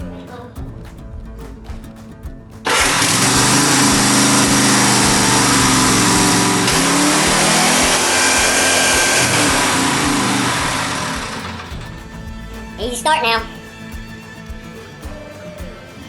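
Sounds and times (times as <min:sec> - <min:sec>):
mower engine running: 0:02.7 - 0:12.2.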